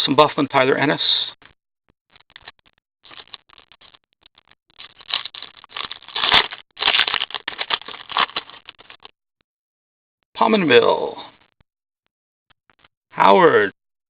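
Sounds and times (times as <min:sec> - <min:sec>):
trading cards rustling: 0:02.1 - 0:09.1.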